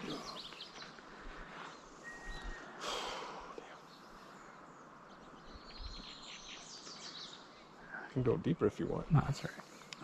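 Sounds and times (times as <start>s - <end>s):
thin whistle-like note: 2.0s - 2.7s.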